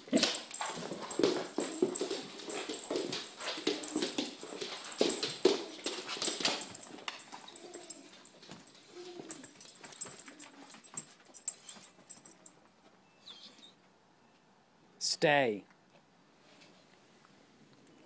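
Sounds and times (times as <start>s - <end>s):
puppy whining: 0.0s - 12.5s, 13.1s - 13.8s
puppy claws clicking on floor: 0.0s - 12.6s.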